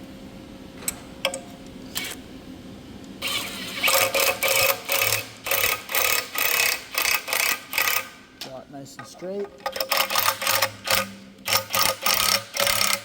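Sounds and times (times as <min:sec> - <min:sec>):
ratchet wrench clicking: 0:03.2 - 0:08.1, 0:09.6 - 0:13.0.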